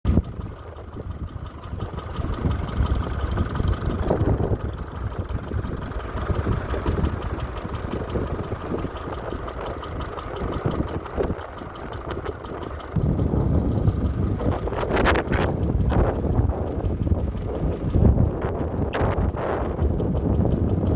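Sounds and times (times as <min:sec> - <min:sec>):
tractor diesel engine running: 0:00.0 - 0:20.9
wind buffeting microphone: 0:00.1 - 0:20.9.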